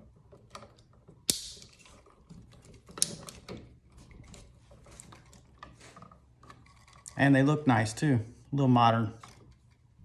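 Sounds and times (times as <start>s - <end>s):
electrical receptacle snapping: 1.3s - 1.7s.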